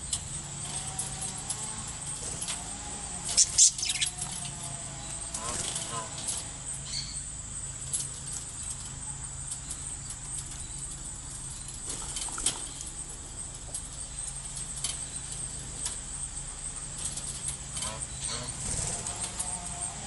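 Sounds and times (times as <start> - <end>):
steady low hum: 0.0 - 20.0
budgerigar chirp: 3.3 - 4.2, 6.8 - 7.2.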